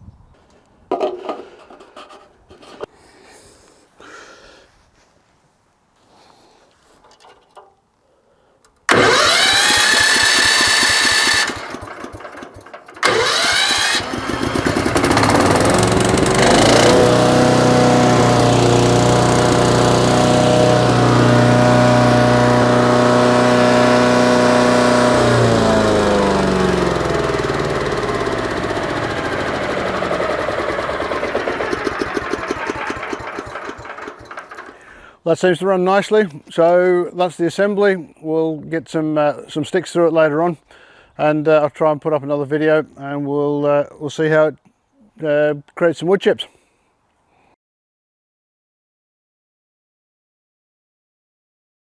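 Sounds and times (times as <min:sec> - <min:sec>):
wood chipper engine running: 0:08.9 - 0:35.1.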